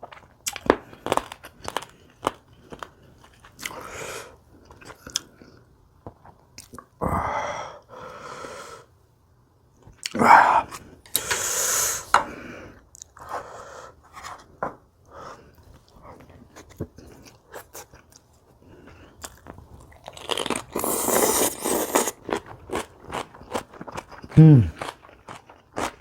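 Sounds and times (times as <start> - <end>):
chewing and crunching food: 0.0 - 3.9, 4.5 - 7.0, 15.6 - 26.0.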